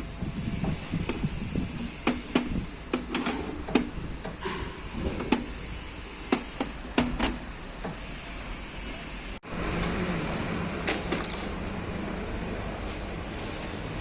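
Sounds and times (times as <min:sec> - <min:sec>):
hand tools and metal parts clinking: 0:10.8 - 0:12.1.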